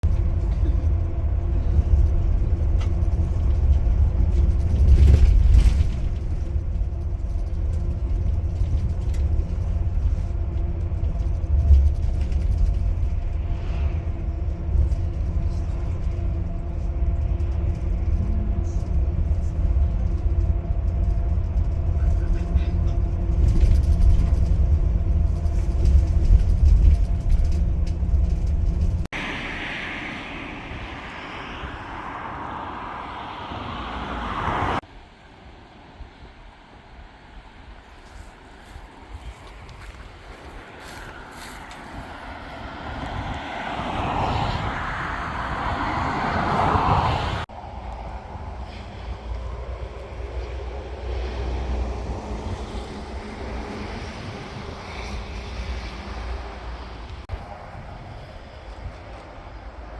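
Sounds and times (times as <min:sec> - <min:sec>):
engine deep rumble: 0:00.0 - 0:34.9
steady hum: 0:29.2 - 0:34.8.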